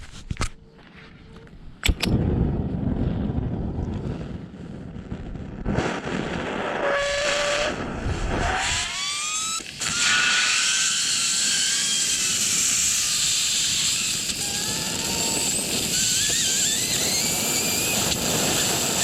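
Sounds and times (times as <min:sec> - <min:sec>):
sharp click: 0:01.3 - 0:02.2.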